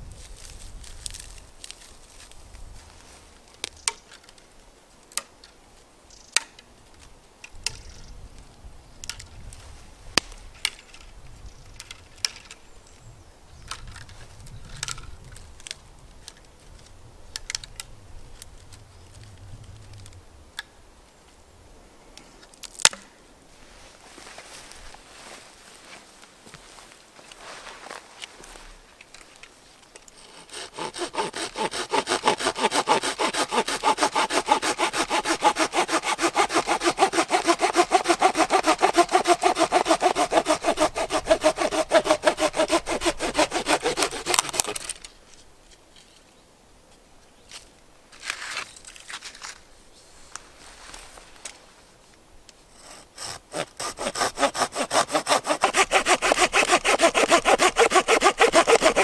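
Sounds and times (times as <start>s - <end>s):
hand saw cutting wood: 30.2s - 45.1s, 52.7s - 59.0s.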